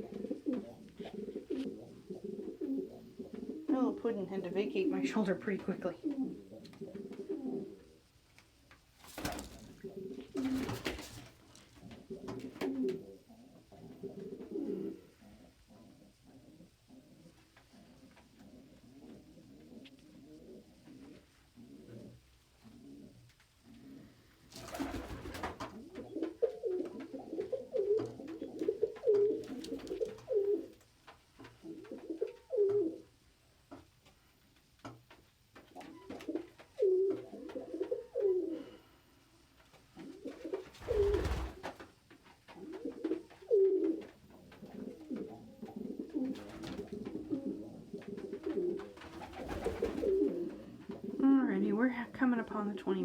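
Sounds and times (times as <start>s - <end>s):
pigeons cooing: 0.0s - 5.0s, 5.8s - 8.1s, 9.2s - 30.8s, 31.5s - 33.1s, 35.7s - 38.9s, 40.0s - 41.8s, 42.5s - 51.3s
rustling thumps: 9.0s - 12.5s.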